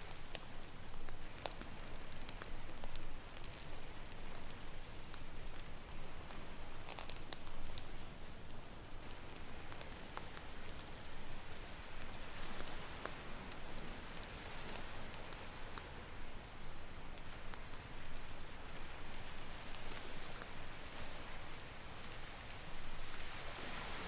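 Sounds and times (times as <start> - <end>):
campfire crackling and popping: 0.0 - 24.0
ocean waves: 9.0 - 24.0.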